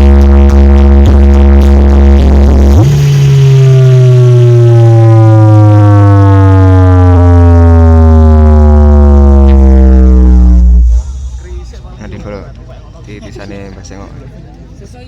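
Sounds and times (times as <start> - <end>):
downward gliding bass tone: 0.0 - 11.9.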